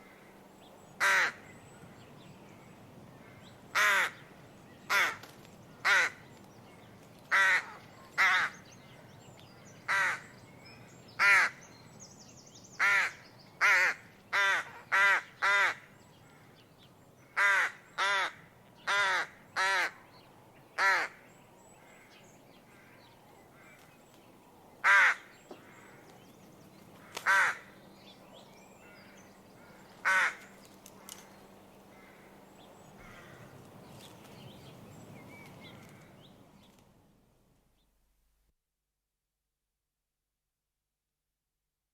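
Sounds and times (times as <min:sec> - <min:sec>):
rook cawing: 0:01.0 - 0:01.5, 0:03.2 - 0:04.3, 0:04.9 - 0:06.3, 0:07.3 - 0:08.6, 0:09.9 - 0:10.3, 0:11.2 - 0:11.6, 0:12.8 - 0:16.6, 0:17.2 - 0:20.0, 0:20.8 - 0:23.9, 0:24.8 - 0:26.1, 0:27.0 - 0:27.8, 0:28.8 - 0:31.3, 0:31.9 - 0:32.4, 0:33.0 - 0:33.6.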